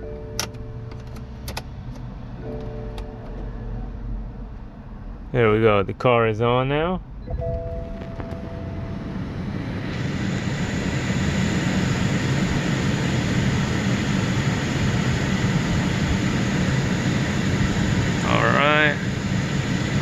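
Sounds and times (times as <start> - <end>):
car rushing noise with low hum: 0.0 - 20.0.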